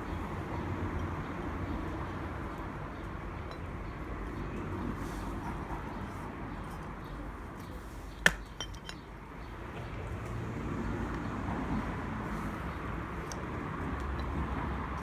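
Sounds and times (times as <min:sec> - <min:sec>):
hard object clinking: 0:03.5 - 0:03.8, 0:08.2 - 0:09.1.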